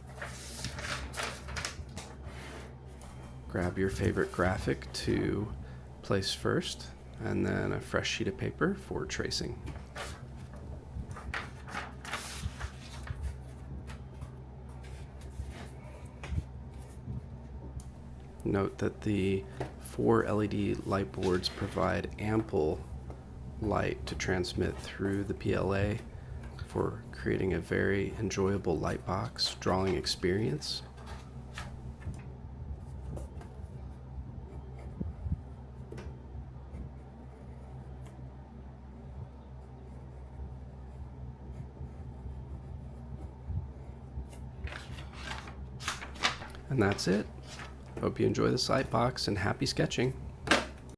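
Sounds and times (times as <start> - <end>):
paper sheets rustling and sliding: 0.0 - 14.1, 18.0 - 32.2, 44.3 - 50.9
steady low hum: 0.0 - 50.9
pencil scratching on paper: 36.7 - 38.2, 39.6 - 45.2.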